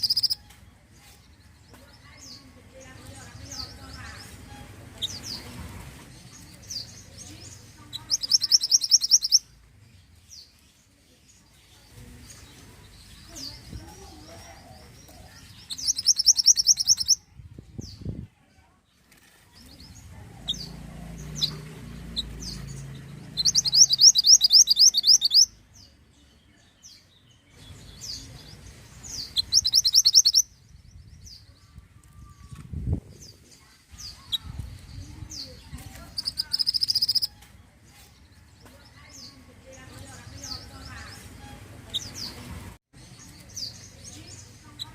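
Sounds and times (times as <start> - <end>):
bird singing high trills: 0.0 - 0.4, 8.0 - 9.5, 15.6 - 17.2, 20.5 - 25.6, 29.1 - 31.5, 36.1 - 37.4
bird chirps: 0.0 - 18.2, 19.5 - 44.9.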